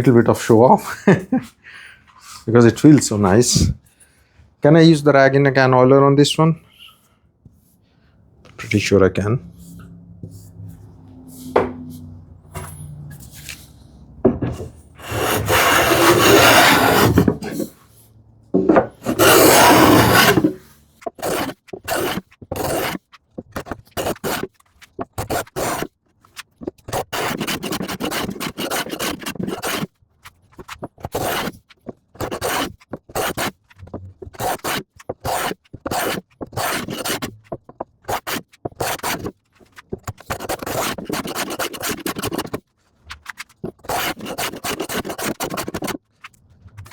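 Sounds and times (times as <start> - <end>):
hand plane scraping along wood: 15.0 - 17.7, 19.0 - 25.9, 26.6 - 29.9, 30.6 - 42.6, 43.3 - 46.0.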